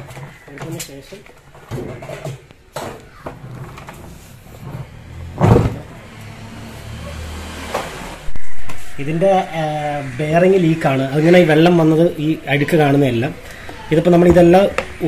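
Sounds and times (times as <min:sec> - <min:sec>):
washing machine parts knocking and scraping: 0:00.0 - 0:06.0
heavy thump: 0:05.4 - 0:05.9.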